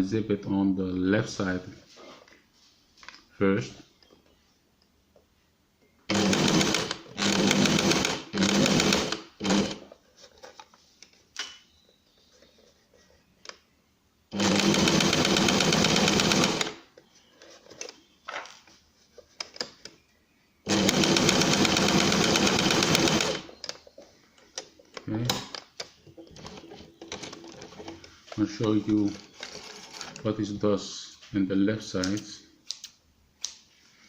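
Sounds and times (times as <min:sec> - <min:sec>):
electric sewing machine stitching: 0:06.1 - 0:09.8, 0:14.3 - 0:16.8, 0:20.7 - 0:23.5.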